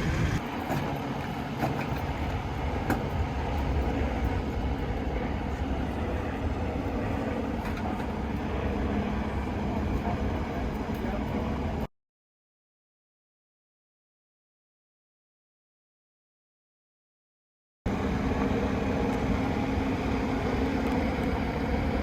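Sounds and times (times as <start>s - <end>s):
vehicle engine rumbling: 0.0s - 11.9s, 17.9s - 22.0s.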